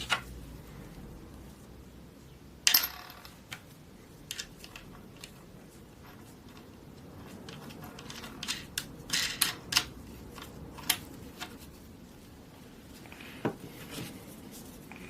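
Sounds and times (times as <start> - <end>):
metal parts clinking: 2.7 - 3.4, 7.5 - 9.9.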